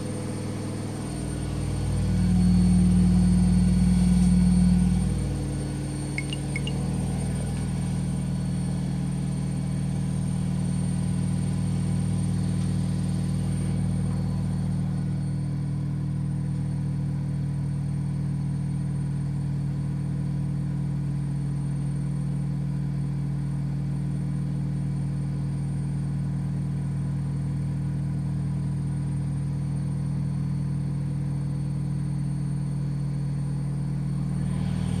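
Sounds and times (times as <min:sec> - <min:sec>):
washing machine spinning: 0:00.0 - 0:15.2.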